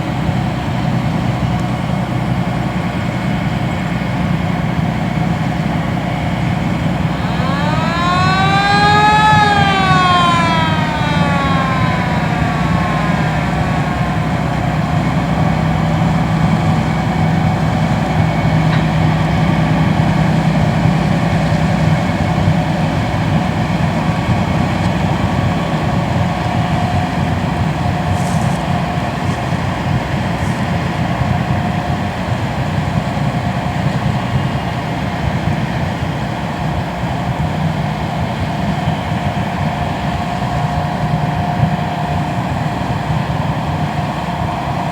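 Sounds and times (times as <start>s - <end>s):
boat diesel engines droning: 0.0s - 37.3s
siren-like horn falling in pitch: 7.1s - 15.6s.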